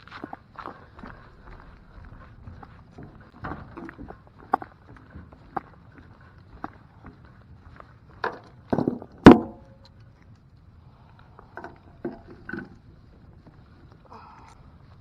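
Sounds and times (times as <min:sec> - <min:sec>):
knocks and clunks: 0:02.3 - 0:05.7, 0:08.2 - 0:09.8.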